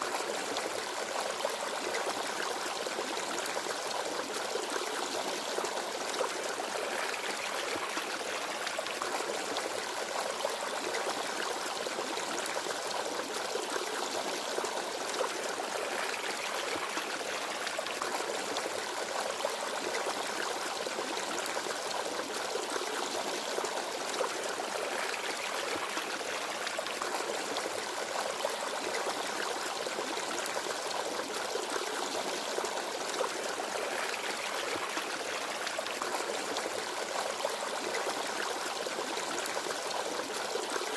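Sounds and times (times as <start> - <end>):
stream babbling over stones: 0.0 - 40.9.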